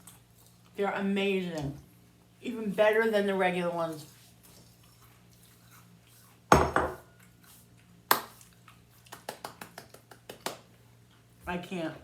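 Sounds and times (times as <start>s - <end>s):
dishware clunking on a table: 6.6s - 7.0s.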